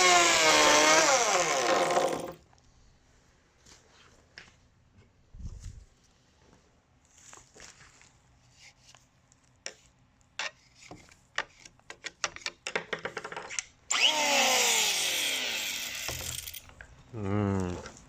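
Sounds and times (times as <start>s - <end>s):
electric planer whirring: 0.0s - 2.4s, 13.9s - 16.2s.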